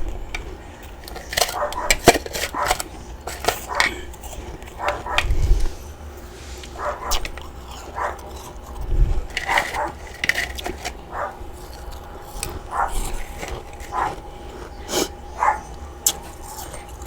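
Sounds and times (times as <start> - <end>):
dog barking: 1.4 - 2.9, 4.7 - 5.3, 6.7 - 8.4, 9.5 - 10.0, 11.0 - 11.4, 12.5 - 13.2, 13.8 - 14.2, 15.3 - 15.8
ice being bitten and crunched: 6.6 - 17.0.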